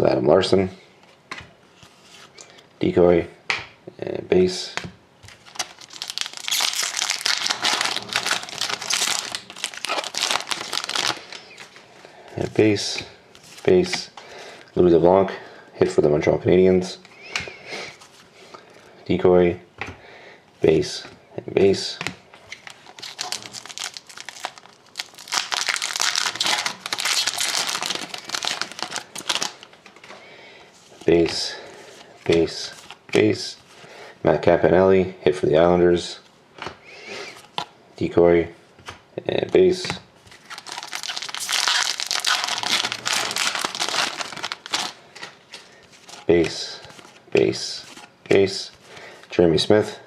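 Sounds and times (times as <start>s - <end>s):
wrapper crinkling and tearing: 5.3s - 11.7s, 22.5s - 29.8s, 40.3s - 47.2s.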